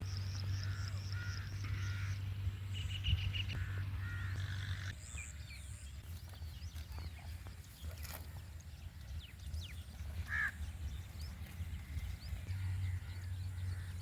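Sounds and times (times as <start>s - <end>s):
birds calling: 0.0s - 14.0s
low steady rumble: 0.0s - 14.0s.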